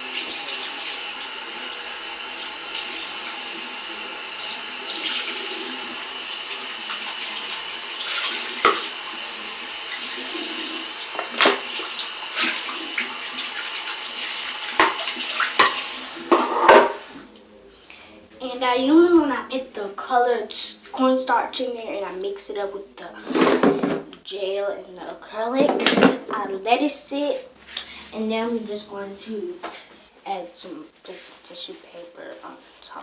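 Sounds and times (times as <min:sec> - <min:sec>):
tap running into sink: 0:06.4 - 0:09.2, 0:09.8 - 0:17.0
dish knocking against sink: 0:08.6 - 0:08.9.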